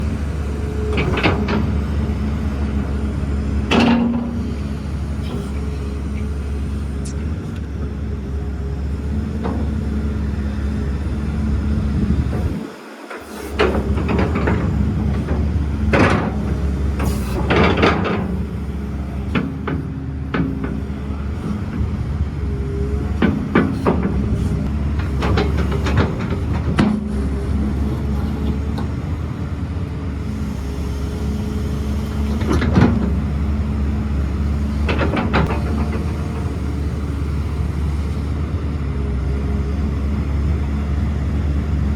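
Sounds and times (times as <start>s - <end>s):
machine clanks and knocks: 0.0s - 1.8s, 3.5s - 6.8s, 13.6s - 21.8s, 23.2s - 27.2s, 34.6s - 38.3s
diesel engine running: 0.0s - 41.9s.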